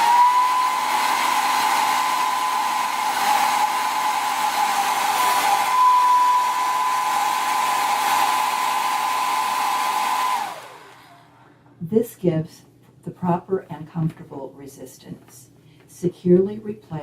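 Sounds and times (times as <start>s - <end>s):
hairdryer air rushing: 0.0s - 11.4s
hairdryer motor whine: 0.0s - 11.4s.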